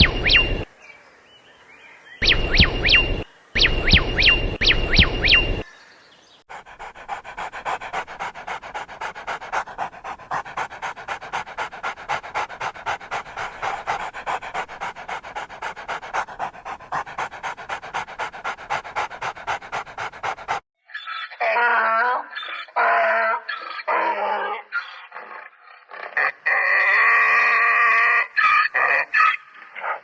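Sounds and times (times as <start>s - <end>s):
dog panting: 0.0s - 0.7s, 2.2s - 5.6s, 6.5s - 20.6s
bird chirps: 0.0s - 6.4s.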